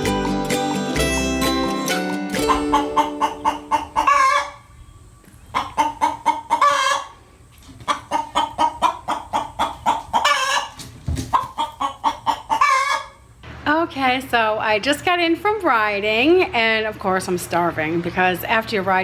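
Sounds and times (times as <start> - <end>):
guineafowl calling: 2.4 - 13.4.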